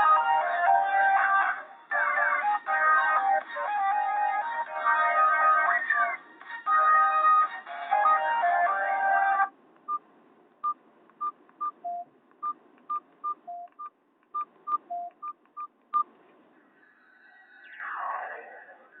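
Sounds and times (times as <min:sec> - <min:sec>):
phone keypad beeps: 0:10.6 - 0:16.1.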